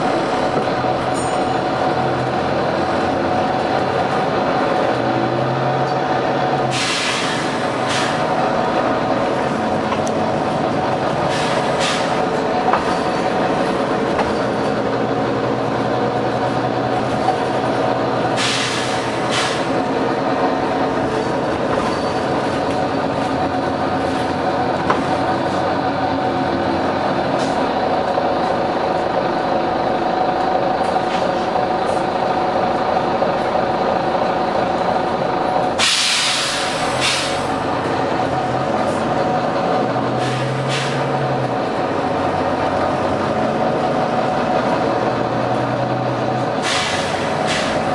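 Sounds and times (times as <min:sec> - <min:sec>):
bus diesel engine droning: 0:00.0 - 0:47.9
air brake hissing: 0:06.7 - 0:08.3, 0:11.2 - 0:12.2, 0:18.4 - 0:19.8, 0:35.8 - 0:37.5, 0:40.2 - 0:41.1, 0:46.6 - 0:47.9.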